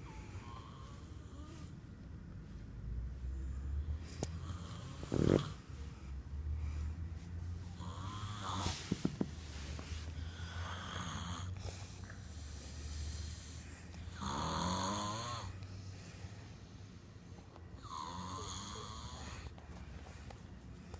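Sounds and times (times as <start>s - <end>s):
steady low hum: 0.0s - 20.9s
person snoring: 4.3s - 5.6s, 7.8s - 8.8s, 10.2s - 11.6s, 12.4s - 15.6s, 17.8s - 19.5s.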